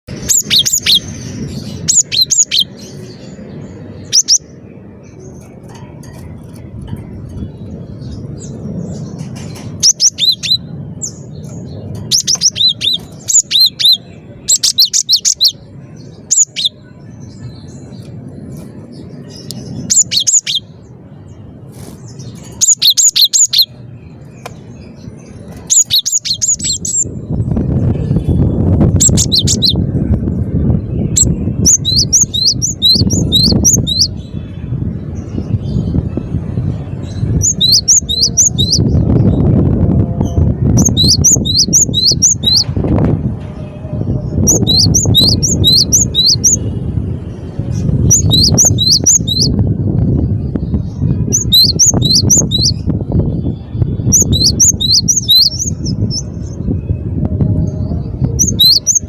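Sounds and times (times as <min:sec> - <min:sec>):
bird singing high sharp notes: 0:00.1 - 0:05.4, 0:07.3 - 0:34.6, 0:37.0 - 0:39.5, 0:40.2 - 0:42.7, 0:43.6 - 0:46.8, 0:47.6 - 0:49.7, 0:50.4 - 0:59.0
low rumble: 0:23.7 - 0:59.0.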